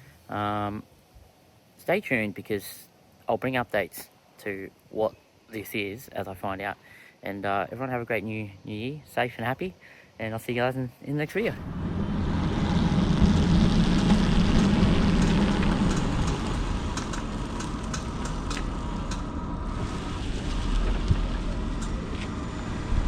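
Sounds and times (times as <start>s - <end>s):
car road and tyre noise: 11.4s - 23.0s.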